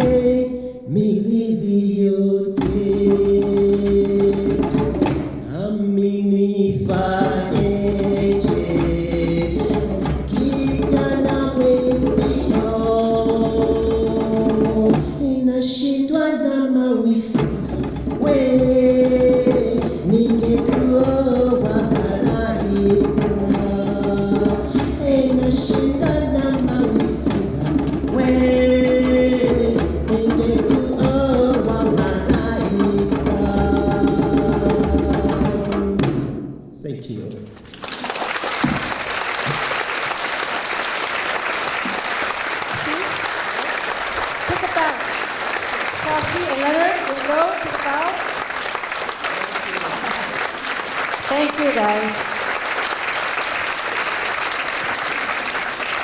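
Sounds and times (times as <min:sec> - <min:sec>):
drums and bass: 0:02.6 - 0:05.6, 0:06.7 - 0:15.5, 0:17.2 - 0:36.4.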